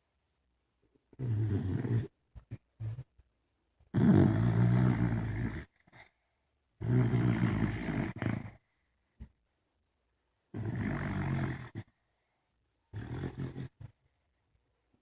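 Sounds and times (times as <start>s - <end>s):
loud snoring: 1.2s - 2.1s, 4.0s - 5.7s, 6.8s - 8.6s, 10.6s - 11.9s, 12.9s - 13.9s.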